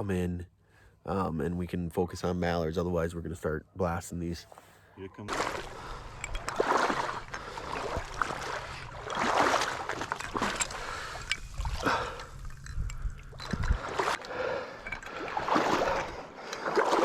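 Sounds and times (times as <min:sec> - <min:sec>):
water sloshing and splashing: 0:05.3 - 0:17.0.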